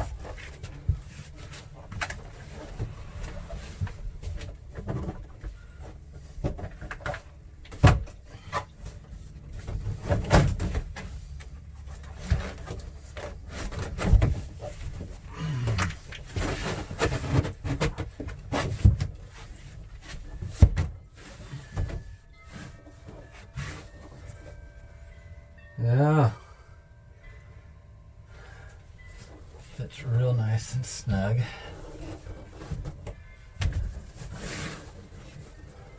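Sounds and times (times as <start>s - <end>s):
plastic panel knocking and scraping: 12.1s - 24.1s
rustling scrape: 16.0s - 24.9s, 29.0s - 35.9s.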